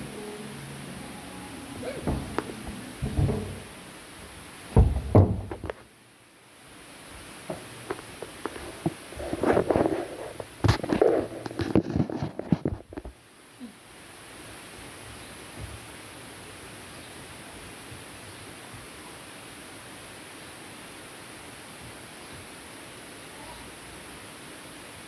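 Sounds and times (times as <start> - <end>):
knocks and thumps: 1.8 - 3.8, 4.7 - 5.8.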